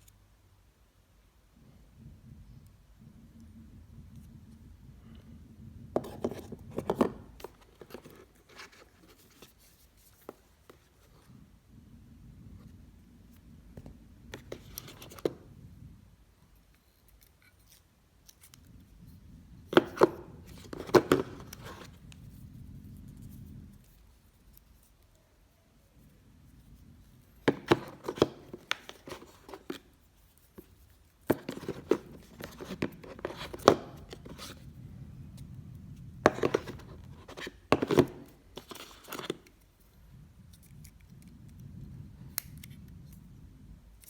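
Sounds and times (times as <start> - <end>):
packaging scrapes and taps: 6.0 - 11.1, 13.8 - 15.4, 19.7 - 22.0, 27.5 - 34.7, 36.2 - 39.6.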